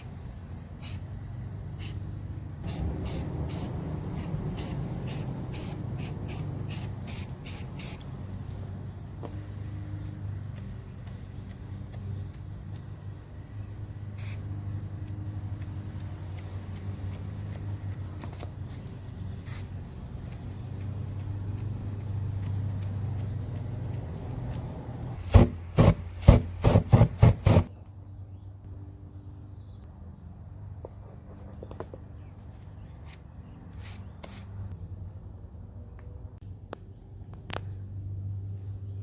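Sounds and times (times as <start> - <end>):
spray can hissing bursts: 0.8 - 1.1, 1.8 - 2.0, 2.6 - 8.0, 14.2 - 14.4, 19.4 - 19.7, 25.2 - 27.7.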